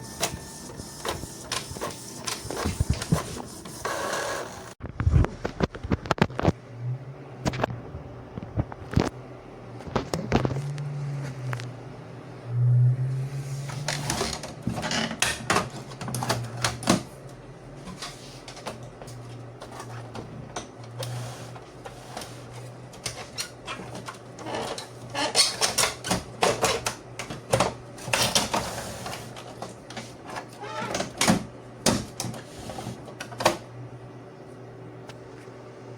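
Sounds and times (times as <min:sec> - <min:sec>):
printer mechanism clattering: 0:00.0 - 0:04.7, 0:13.7 - 0:17.2, 0:17.8 - 0:33.7.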